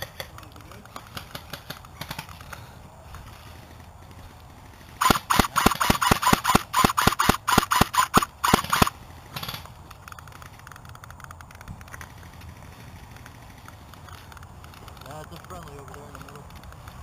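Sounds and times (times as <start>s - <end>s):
airsoft gun firing single shots: 5.0s - 9.6s.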